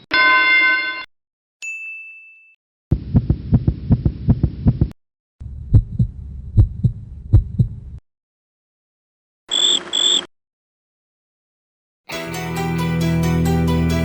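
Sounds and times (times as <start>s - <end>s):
bright ding: 0.1s - 2.6s
heartbeat thumps: 2.9s - 8.0s
rapid low thumps: 2.9s - 8.0s.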